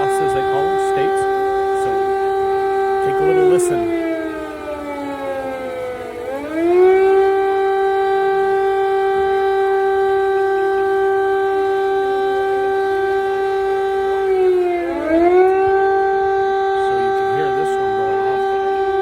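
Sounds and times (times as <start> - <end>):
air-raid siren wailing: 0.0 - 19.0.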